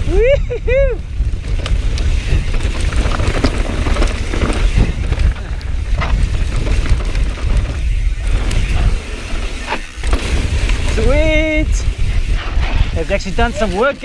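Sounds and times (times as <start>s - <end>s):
mountain bike rolling and rattling: 0.0s - 14.0s
wind buffeting microphone: 0.0s - 14.0s
bike clicks and knocks: 1.3s - 11.2s.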